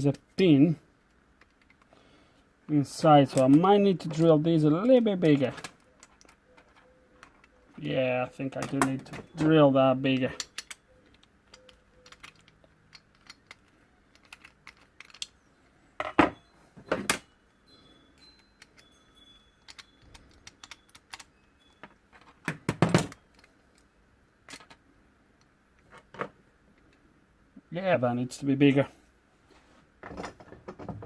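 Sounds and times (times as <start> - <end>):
small metallic clicks and taps: 10.1 - 15.4, 19.6 - 23.9.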